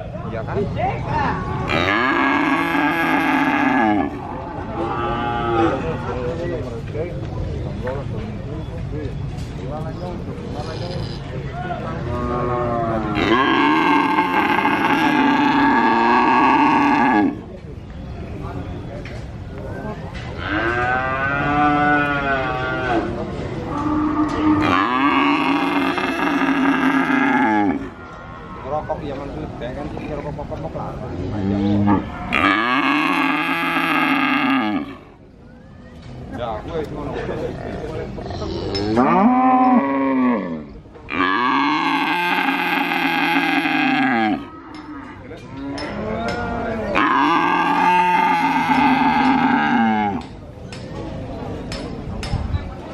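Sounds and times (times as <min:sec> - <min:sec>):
calf mooing: 0:39.0 - 0:45.2, 0:47.0 - 0:50.2.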